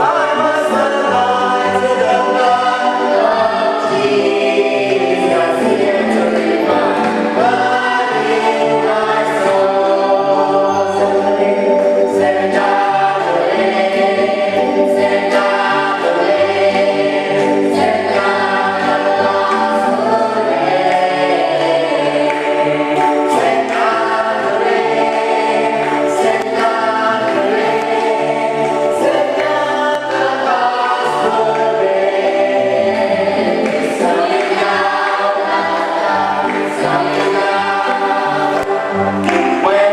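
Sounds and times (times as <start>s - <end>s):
group singing a gospel hymn: 0.0s - 39.9s.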